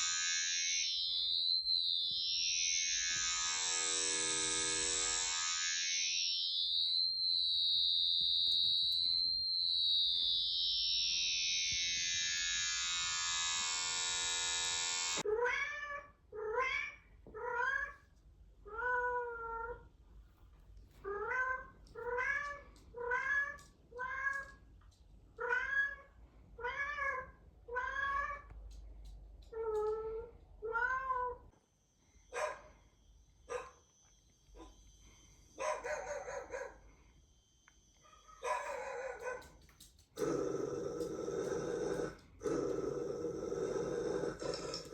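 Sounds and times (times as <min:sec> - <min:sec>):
electronic tone sweeping in pitch: 0:00.0 - 0:15.2.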